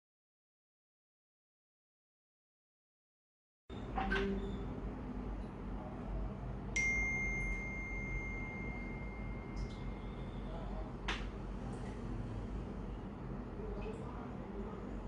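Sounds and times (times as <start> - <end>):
ringing ping: 6.8 - 10.0.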